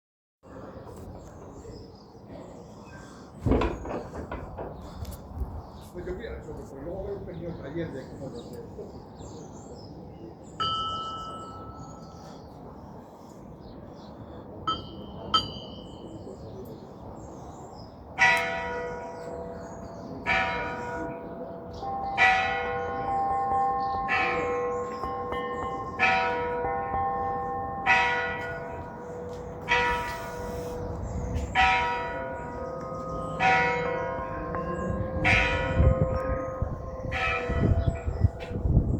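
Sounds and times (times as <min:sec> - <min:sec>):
large church bells ringing: 0:10.5 - 0:12.6, 0:18.1 - 0:38.9.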